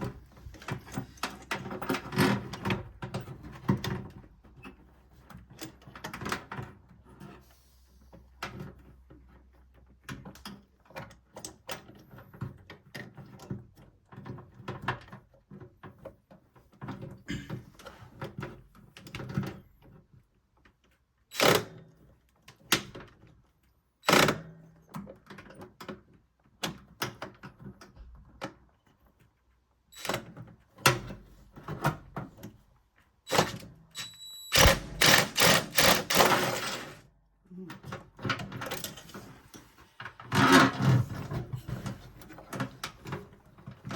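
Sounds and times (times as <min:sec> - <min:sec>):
tools and parts clattering: 0:33.3 - 0:37.1.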